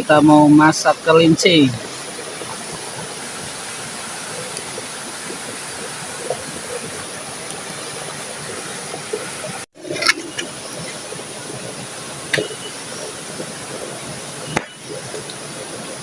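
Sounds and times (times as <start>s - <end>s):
river water rushing: 0.0s - 16.0s.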